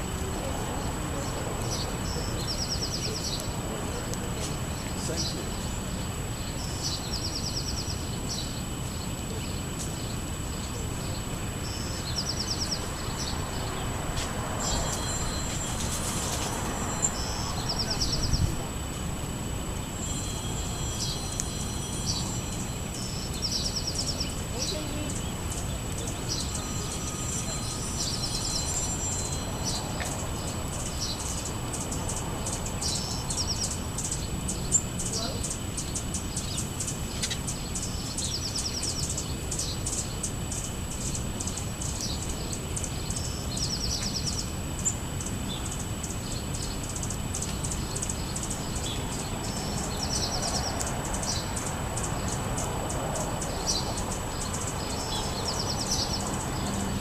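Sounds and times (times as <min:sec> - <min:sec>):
songbird trilling: 0:00.0 - 0:57.0.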